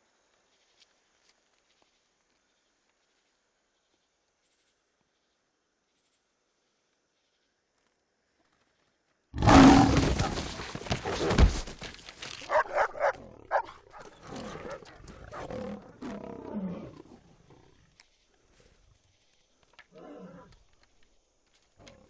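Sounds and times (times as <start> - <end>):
low growls: 9.4 - 11.6, 12.8 - 17.8
lion roar: 9.4 - 11.8, 12.5 - 17.8, 19.9 - 20.6.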